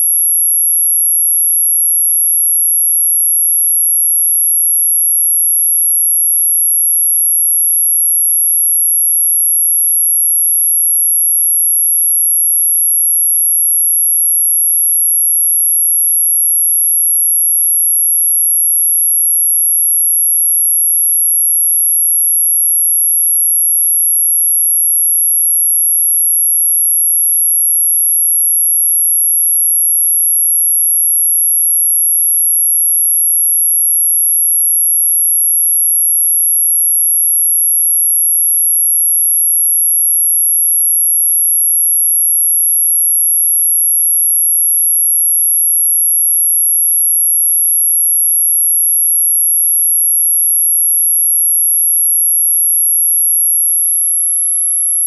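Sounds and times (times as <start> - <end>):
high-pitched sine tone: 38.7 - 55.0.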